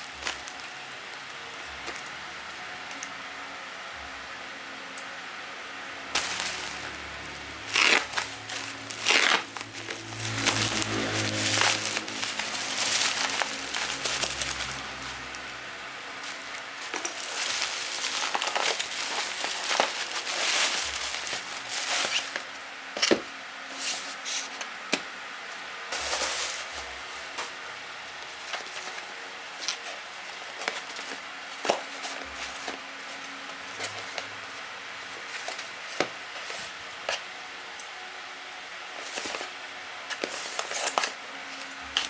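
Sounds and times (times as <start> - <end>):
packaging crinkling and rustling: 0.0 - 0.8, 6.1 - 23.2, 40.1 - 42.0.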